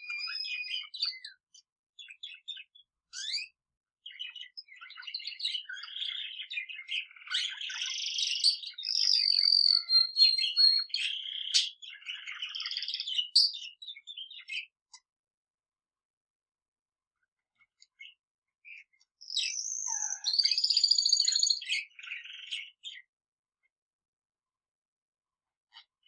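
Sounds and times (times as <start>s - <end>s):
canary singing: 0.0s - 1.4s, 2.0s - 14.8s, 18.8s - 23.1s.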